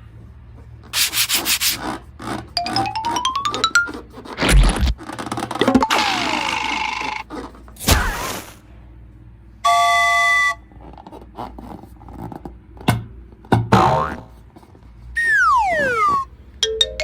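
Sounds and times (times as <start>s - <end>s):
hiss: 1.0s - 1.8s
rising glide: 15.2s - 16.3s
falling sliding tone: 15.2s - 17.0s.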